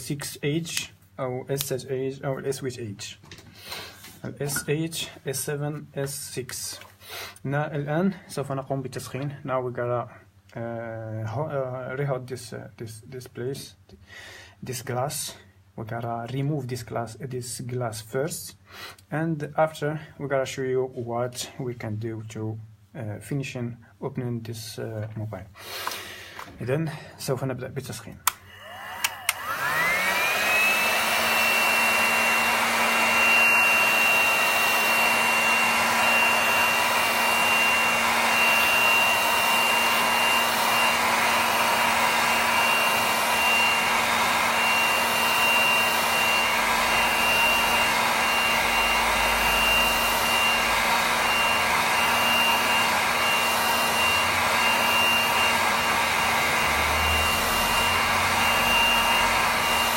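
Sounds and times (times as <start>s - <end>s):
hot air gun fan whine and rush: 28.6s - 59.9s.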